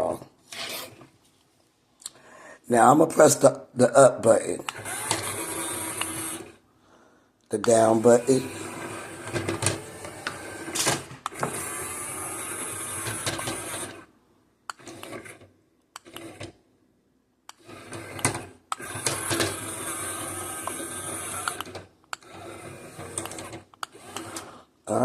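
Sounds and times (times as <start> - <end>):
toy motor and gears whirring: 0.5 - 1.0, 4.7 - 6.6, 7.7 - 14.1, 17.5 - 24.6.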